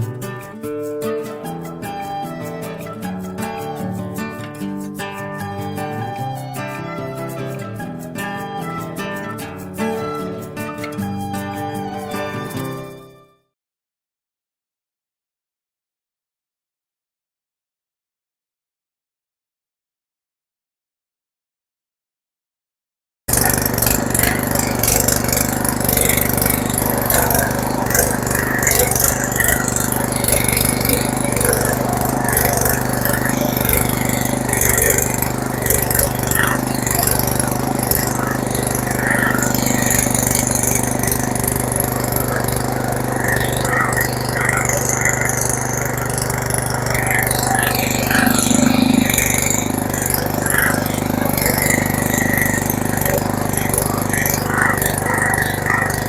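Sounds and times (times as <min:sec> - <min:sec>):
engine running steadily: 0:23.3 - 0:56.0.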